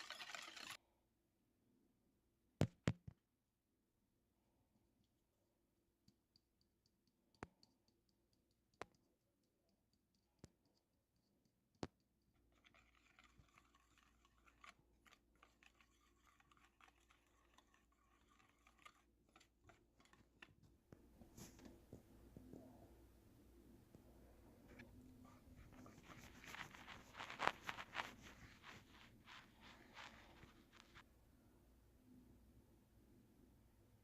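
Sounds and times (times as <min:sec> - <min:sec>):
soft scraping and rustling: 0:24.6 - 0:31.1.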